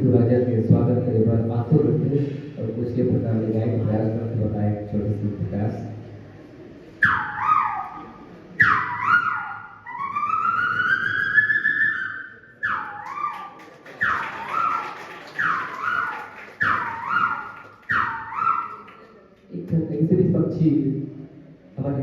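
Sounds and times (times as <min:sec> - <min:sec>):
man whistling bird calls: 0:08.6 - 0:18.9.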